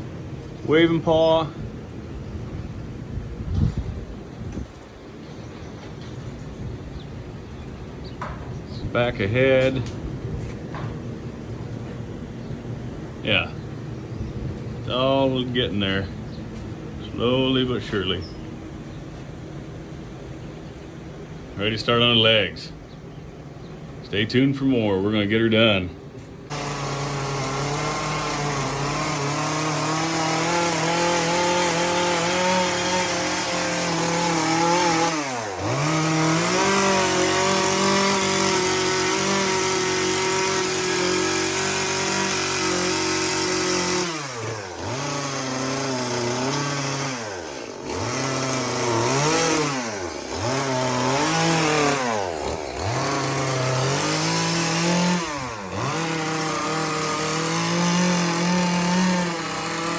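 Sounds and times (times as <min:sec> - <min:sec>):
chainsaw cutting log: 0:26.5 - 0:59.9.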